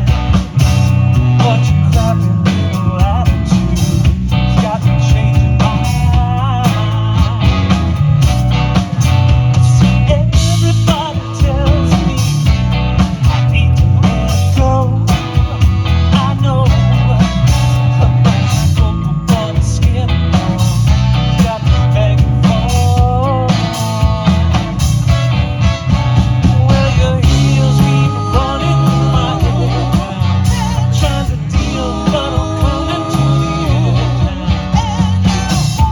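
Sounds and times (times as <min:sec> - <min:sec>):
live band music: 0:00.0 - 0:35.9
person singing: 0:26.4 - 0:35.9.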